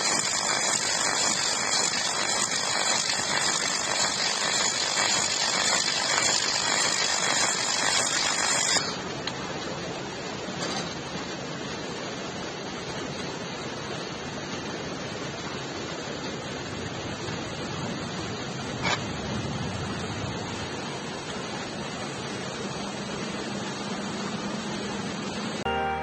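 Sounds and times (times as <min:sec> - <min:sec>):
laser welding machine hissing: 0:00.0 - 0:09.1.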